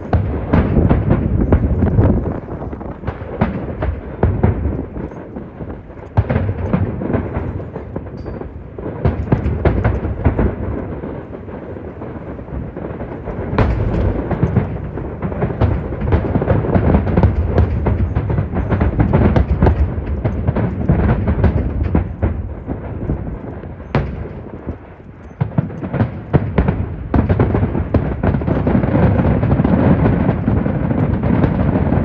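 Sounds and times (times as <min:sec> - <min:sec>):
low rumble: 0:00.0 - 0:05.9
fireworks bursting with sharp bangs: 0:00.0 - 0:32.0
wind buffeting microphone: 0:00.0 - 0:32.0.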